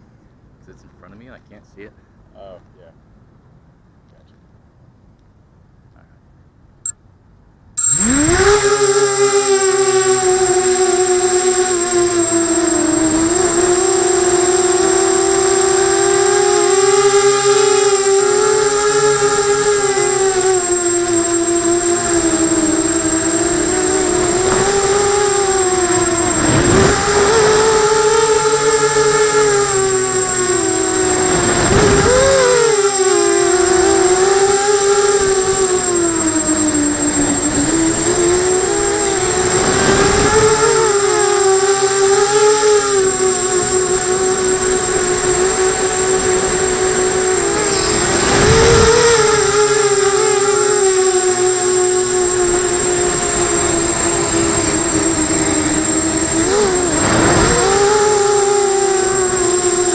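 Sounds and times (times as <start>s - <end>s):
drone motors whining: 7.8s - 59.9s
brief rushing noise: 56.4s - 58.6s.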